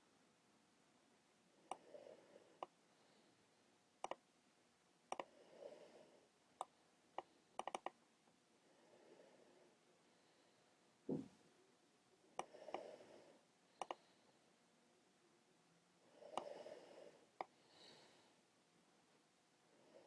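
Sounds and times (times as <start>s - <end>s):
computer mouse clicks: 1.7s - 1.9s, 4.0s - 4.2s, 5.1s - 5.3s, 6.6s - 8.0s, 12.4s - 12.8s, 13.8s - 14.0s.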